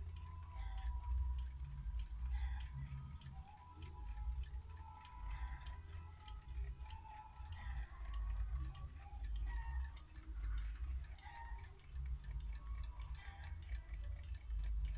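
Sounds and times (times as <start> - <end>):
clock ticking: 0.0 - 14.9.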